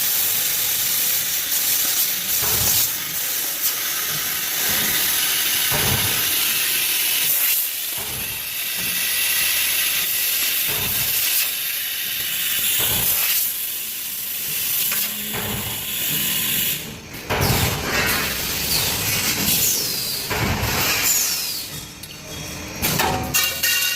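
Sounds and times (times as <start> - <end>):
cutting machine hissing: 1.4 - 16.8.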